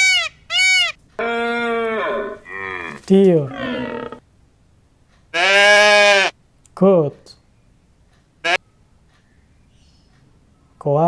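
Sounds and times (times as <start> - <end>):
deer call: 0.0 - 4.2
peacock calls: 0.0 - 4.2.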